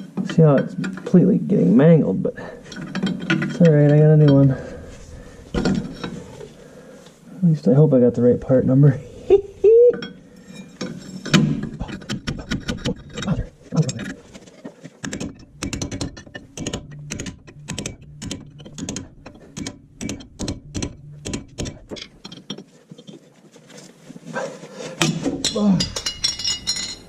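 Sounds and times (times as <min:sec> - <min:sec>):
metallic clicks and knocks: 0:00.0 - 0:01.3, 0:02.6 - 0:04.6, 0:10.8 - 0:23.2.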